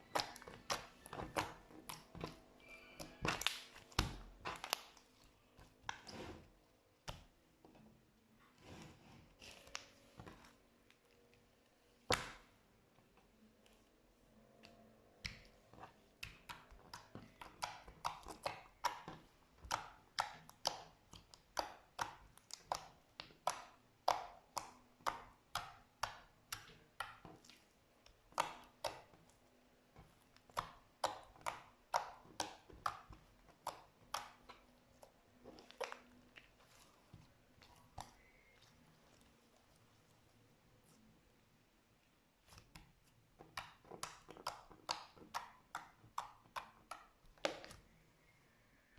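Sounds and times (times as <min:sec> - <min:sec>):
slime clicking and popping: 0:00.0 - 0:02.4, 0:03.2 - 0:05.0, 0:16.2 - 0:29.3, 0:30.3 - 0:36.5, 0:43.4 - 0:47.8.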